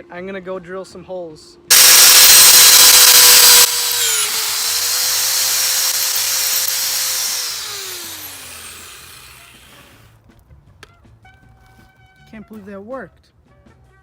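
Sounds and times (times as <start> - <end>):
power drill drilling metal: 1.7 - 10.1.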